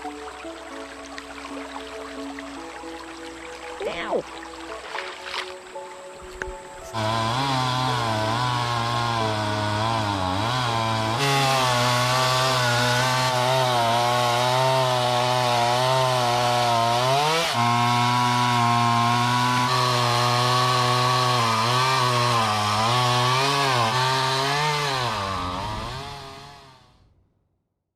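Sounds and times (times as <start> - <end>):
chainsaw running: 6.8 - 26.9.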